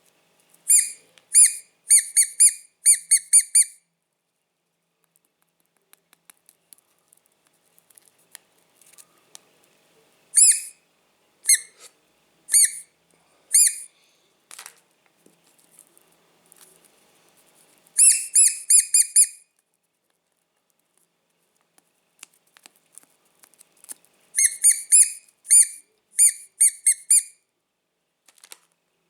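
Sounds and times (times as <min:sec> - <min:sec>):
high-pitched squeaks: 0:00.7 - 0:03.8, 0:10.4 - 0:10.8, 0:11.5 - 0:11.9, 0:12.5 - 0:12.9, 0:13.5 - 0:13.9, 0:18.0 - 0:19.4, 0:24.4 - 0:27.4.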